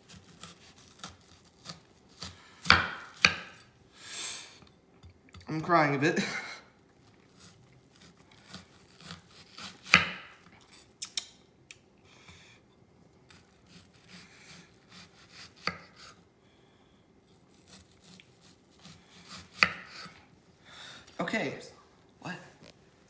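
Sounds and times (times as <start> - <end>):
knife slicing onion: 0.0 - 3.7, 7.1 - 11.3, 13.3 - 16.2, 17.3 - 20.3.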